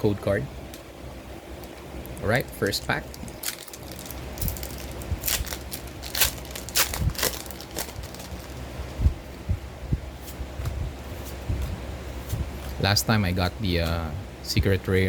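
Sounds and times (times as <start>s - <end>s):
foil wrapper crinkling: 2.0s - 9.0s.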